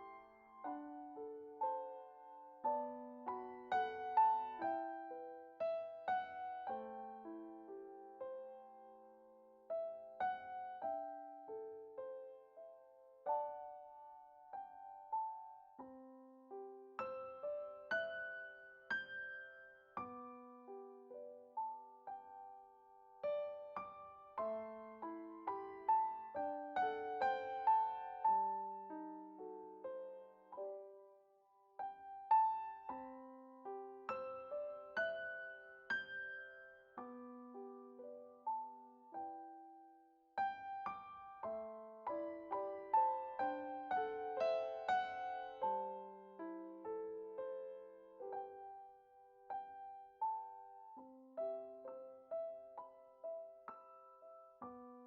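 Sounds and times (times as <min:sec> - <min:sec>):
solo piano music: 0:00.0 - 0:55.0.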